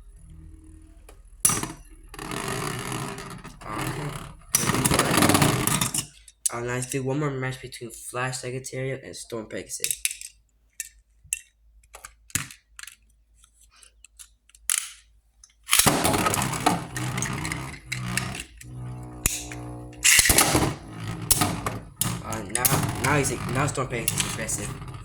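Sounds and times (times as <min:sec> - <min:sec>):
plastic clicks: 0:09.8 - 0:25.0
spinning tops knocking together: 0:15.7 - 0:25.0
spinning tops whirring in stadium: 0:15.7 - 0:25.0.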